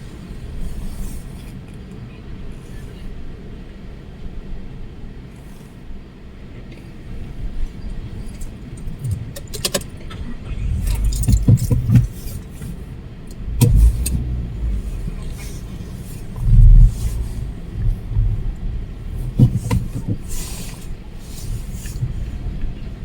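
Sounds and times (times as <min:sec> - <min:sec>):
sharp rattling clicks: 0:08.3 - 0:20.8
storm wind buffeting microphone: 0:08.6 - 0:23.0.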